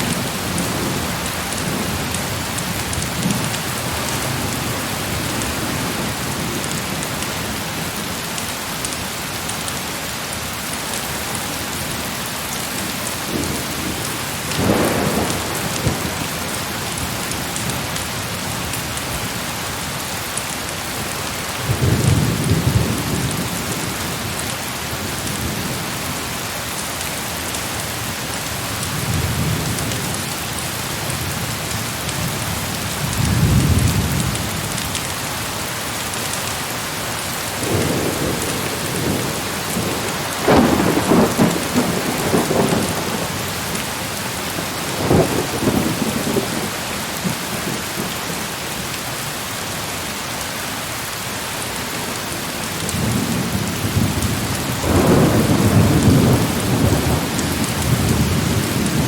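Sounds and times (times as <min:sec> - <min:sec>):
heavy rain: 0:00.0 - 0:59.0
thunder rumbling: 0:13.1 - 0:18.0, 0:37.5 - 0:48.3, 0:52.8 - 0:59.0.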